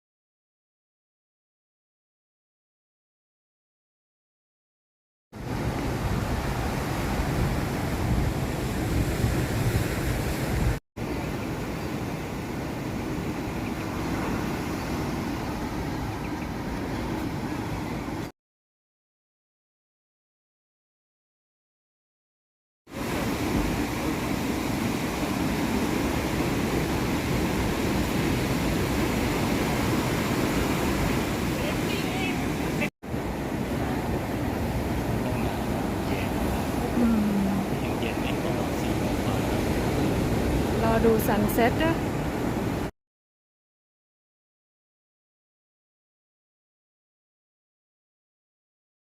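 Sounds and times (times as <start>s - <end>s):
wind on microphone: 5.4s - 10.8s
wind blowing on microphone: 5.4s - 18.1s
sea surf: 5.4s - 18.3s, 22.9s - 42.9s.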